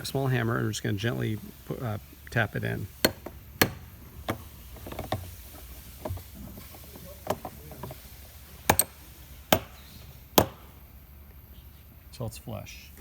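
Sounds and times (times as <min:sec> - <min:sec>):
hammer tapping metal punch: 0:02.3 - 0:10.8.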